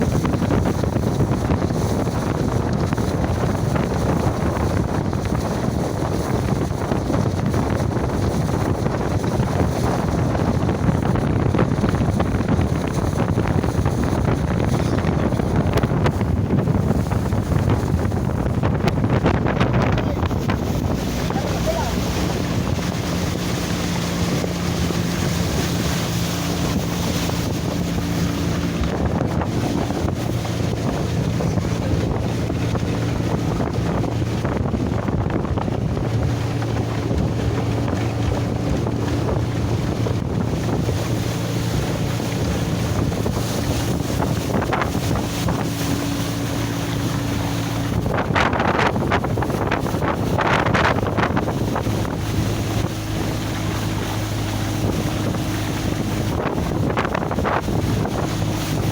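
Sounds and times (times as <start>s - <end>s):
boat motor running: 0.0s - 58.9s
water sloshing: 0.0s - 58.9s
wind noise on microphone: 0.0s - 58.9s.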